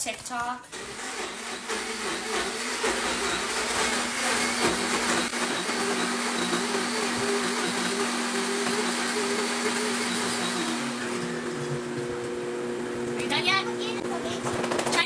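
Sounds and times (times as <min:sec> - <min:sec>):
kitchen blender running: 0:00.7 - 0:15.0.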